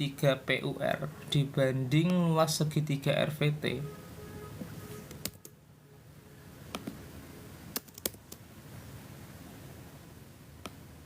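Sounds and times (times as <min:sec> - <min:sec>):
faint steady hiss: 0:00.0 - 0:11.0
computer keys clicking: 0:05.1 - 0:05.6, 0:07.7 - 0:08.4.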